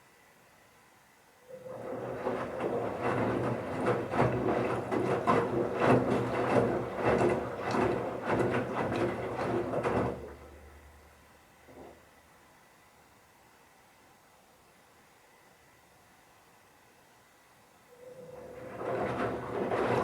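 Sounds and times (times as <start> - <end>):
washing machine motor hum: 1.5 - 12.1, 18.0 - 20.0.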